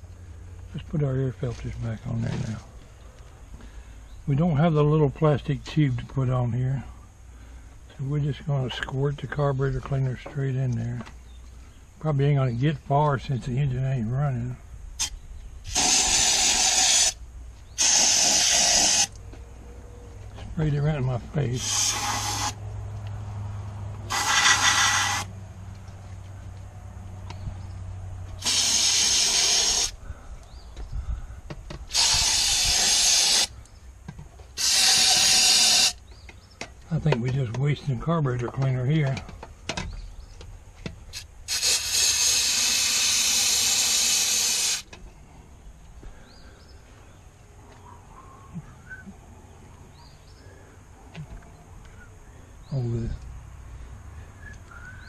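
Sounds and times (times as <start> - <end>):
aerosol spray hissing: 15.7 - 17.2, 17.8 - 19.1, 21.6 - 22.6, 24.1 - 25.3, 28.4 - 30.0, 31.9 - 33.5, 34.6 - 36.0, 41.1 - 44.8.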